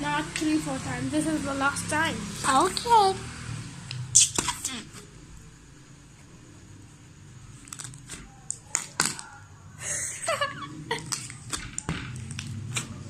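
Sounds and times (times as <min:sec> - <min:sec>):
person giggling: 0:09.8 - 0:11.4.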